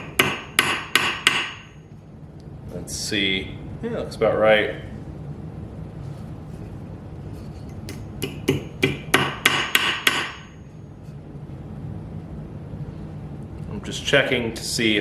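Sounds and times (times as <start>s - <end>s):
hammer striking wire on anvil: 0.0s - 1.8s, 7.9s - 10.6s.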